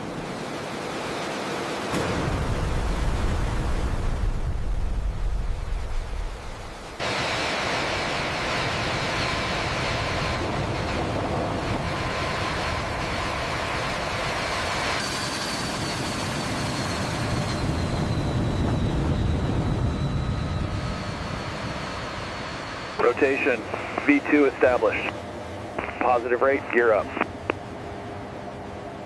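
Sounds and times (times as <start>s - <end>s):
jet engines roaring with whine: 0.0s - 29.0s
deep rumble: 2.1s - 7.0s.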